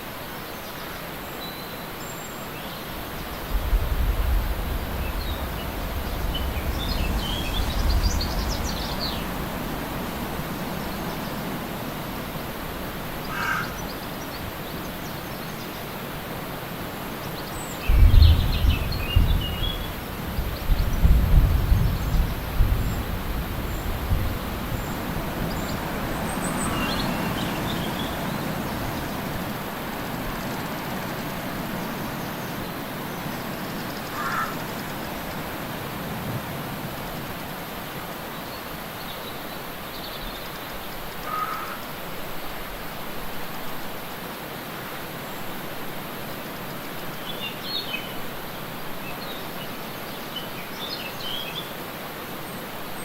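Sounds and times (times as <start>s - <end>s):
waterfall rushing: 0.0s - 20.7s, 21.4s - 53.0s
wind rumble on microphone: 2.9s - 15.2s, 17.4s - 33.9s
faint bird chirps: 13.3s - 14.1s.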